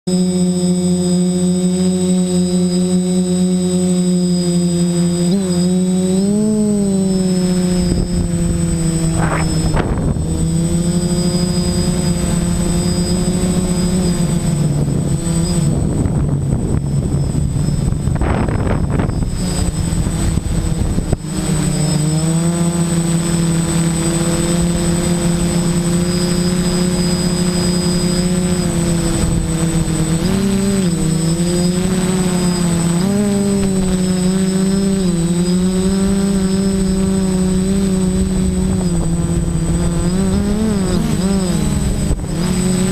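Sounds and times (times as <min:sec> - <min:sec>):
drone motors humming: 0:00.1 - 0:42.9
wind rushing: 0:07.7 - 0:10.8.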